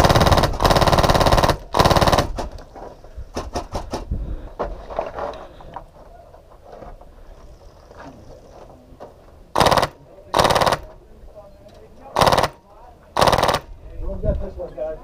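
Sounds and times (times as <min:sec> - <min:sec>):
airsoft gun firing full auto: 0:00.0 - 0:02.5, 0:09.6 - 0:10.9, 0:12.2 - 0:12.6, 0:13.2 - 0:13.7.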